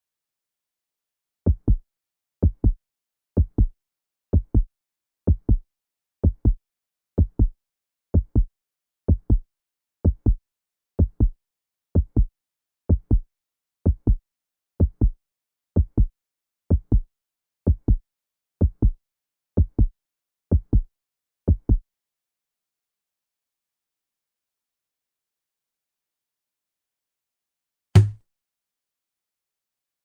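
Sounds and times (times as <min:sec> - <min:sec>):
heartbeat thumps: 0:07.2 - 0:07.5, 0:08.2 - 0:08.5, 0:11.0 - 0:11.4, 0:13.9 - 0:14.2, 0:16.7 - 0:17.1, 0:17.7 - 0:18.0.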